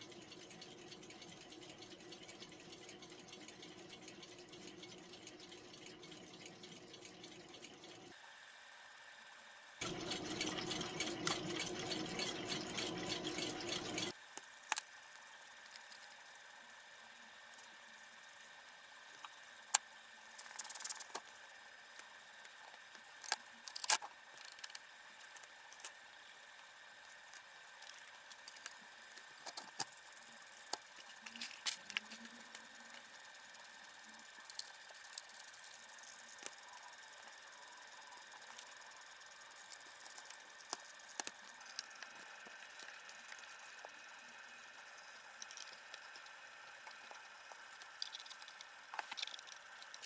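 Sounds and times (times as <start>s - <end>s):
clicks of small metal clock parts: 22.9s - 26.0s.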